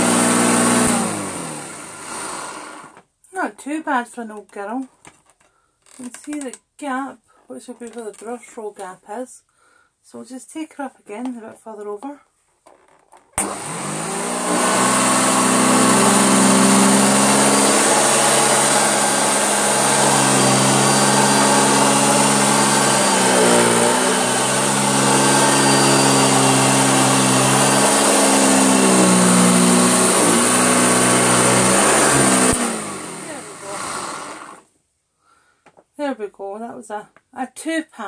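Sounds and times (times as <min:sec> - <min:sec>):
vacuum cleaner motor humming: 0:00.0 - 0:03.0, 0:13.4 - 0:34.6.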